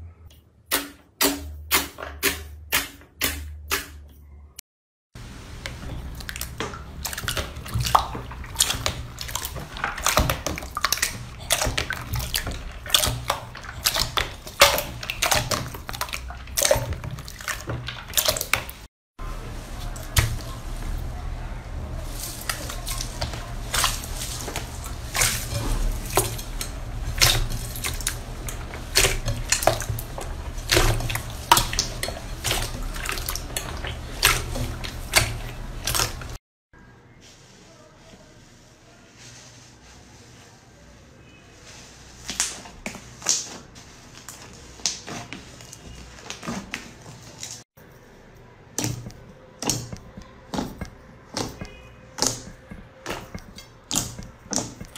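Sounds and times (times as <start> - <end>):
slime squishing wet clicks: 22.1 - 36.4.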